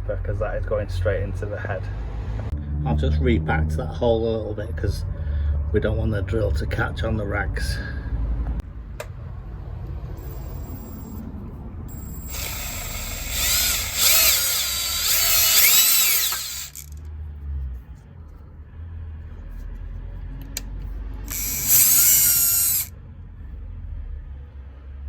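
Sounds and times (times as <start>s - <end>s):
power drill drilling metal: 11.9s - 17.0s, 21.3s - 22.9s.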